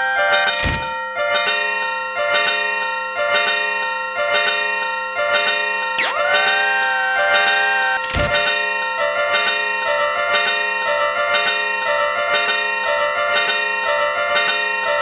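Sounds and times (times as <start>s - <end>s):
level-crossing alarm clanging: 0.0s - 15.0s.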